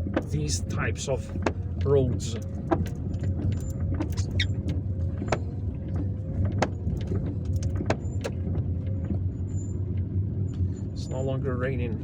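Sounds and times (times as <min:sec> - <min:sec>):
engine and tyre rumble: 0:00.0 - 0:12.0.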